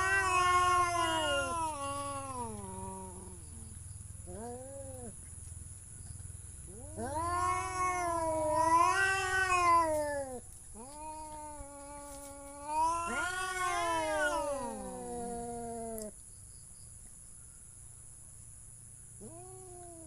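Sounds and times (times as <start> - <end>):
cat yowling: 0.0 - 3.5, 4.3 - 5.2, 6.7 - 16.1, 19.2 - 20.0.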